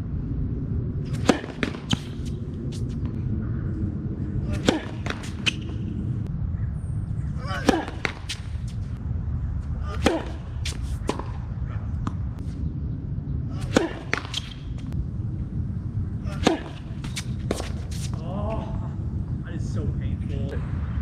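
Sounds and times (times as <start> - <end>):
low rumble: 0.0 - 21.0
rackets striking tennis ball: 1.1 - 3.2, 4.5 - 5.9, 7.6 - 8.8, 9.9 - 12.2, 13.6 - 15.0, 16.3 - 18.2
tennis ball bouncing: 1.1 - 3.2, 4.5 - 6.0, 7.6 - 8.9, 9.9 - 12.2, 13.6 - 15.0, 16.3 - 18.2.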